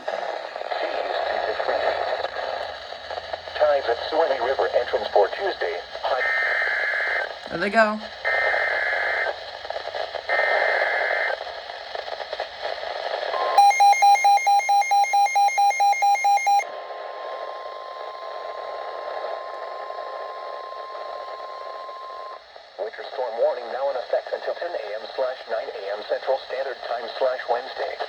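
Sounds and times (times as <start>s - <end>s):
radio static: 0.0s - 28.0s
electronic alarm beeping rapidly: 13.4s - 16.6s
steady warning alarm tone: 13.4s - 16.6s.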